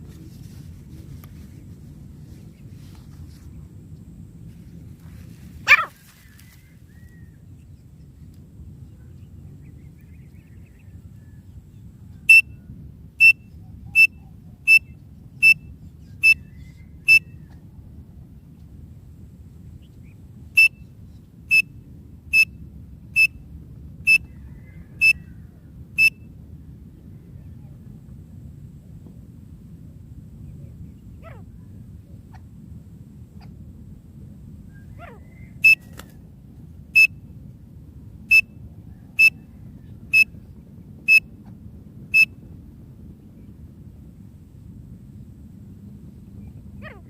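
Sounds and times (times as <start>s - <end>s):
low steady rumble: 0.0s - 47.0s
francolin calling: 12.2s - 12.6s, 13.2s - 17.4s, 20.6s - 20.8s, 22.3s - 22.5s, 23.2s - 23.4s, 24.1s - 26.2s, 34.8s - 36.0s, 37.0s - 37.2s, 39.1s - 40.4s.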